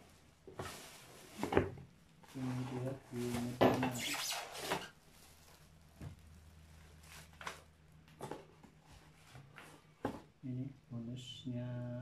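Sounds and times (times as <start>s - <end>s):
faint steady hum: 0.0s - 12.0s
soft knocks of handled objects: 7.4s - 10.4s.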